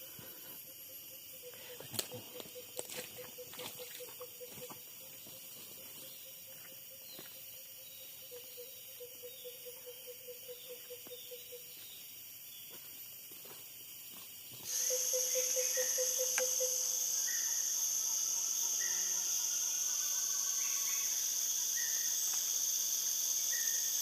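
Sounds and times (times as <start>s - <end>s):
insects buzzing: 0.0s - 24.0s
loud insect buzz: 14.7s - 24.0s.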